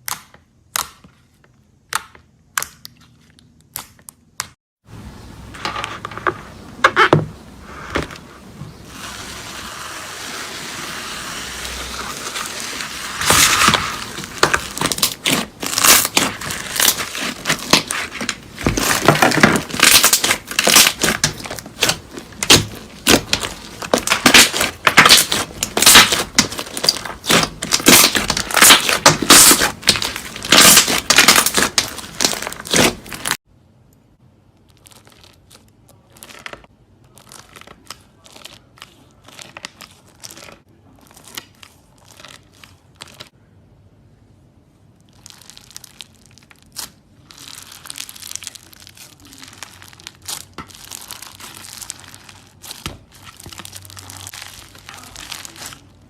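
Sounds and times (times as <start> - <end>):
slime crackling and popping: 8.9 - 33.4, 45.0 - 56.0.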